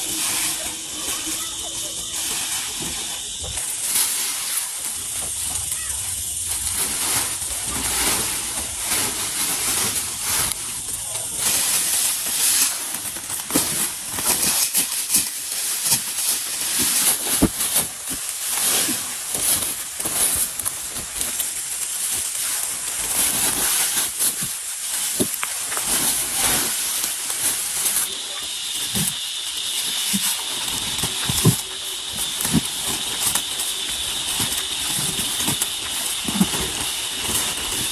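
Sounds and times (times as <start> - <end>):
thin high tone: 0.0 - 12.1.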